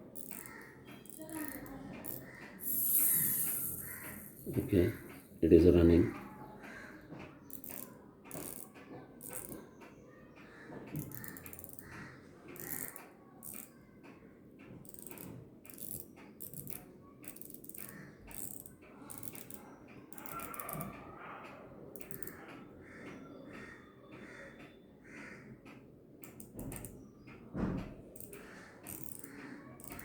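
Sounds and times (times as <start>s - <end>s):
watch movement clicking: 0.0s - 6.3s, 7.4s - 9.9s, 10.9s - 21.2s, 21.9s - 22.6s, 26.2s - 30.0s.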